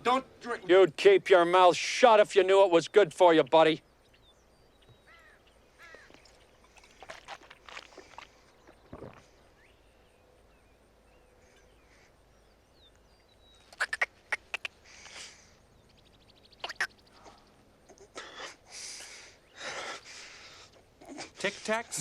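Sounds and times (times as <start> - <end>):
man swallowing: 5.8 - 9.6.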